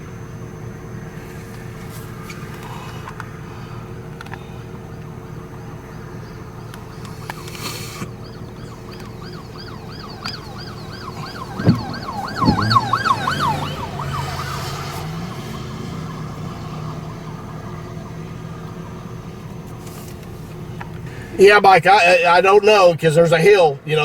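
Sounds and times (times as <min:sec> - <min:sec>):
vehicle engine humming: 0:00.0 - 0:24.0
emergency siren yelping: 0:05.7 - 0:20.7
sharp knocks: 0:11.3 - 0:13.6.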